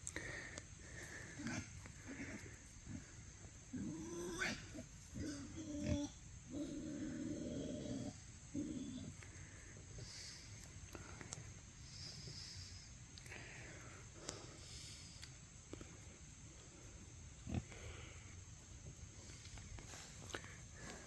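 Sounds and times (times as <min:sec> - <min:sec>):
pigs grunting: 0:01.0 - 0:10.3, 0:17.4 - 0:18.4.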